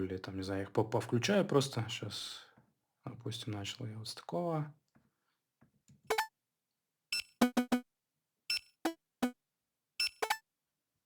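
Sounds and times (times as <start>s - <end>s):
short electronic beeps: 7.1s - 7.8s, 8.5s - 9.4s, 10.0s - 10.4s.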